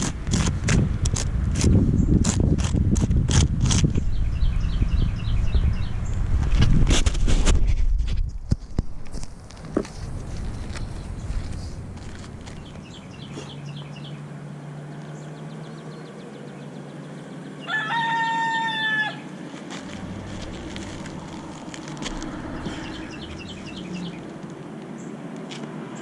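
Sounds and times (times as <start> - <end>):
steady low hum: 19.3 - 24.8.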